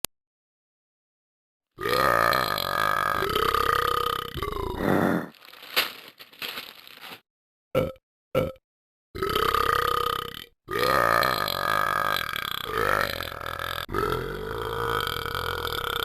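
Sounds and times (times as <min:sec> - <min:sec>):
loud burps: 0:01.8 - 0:05.3, 0:07.8 - 0:08.6, 0:09.2 - 0:16.0.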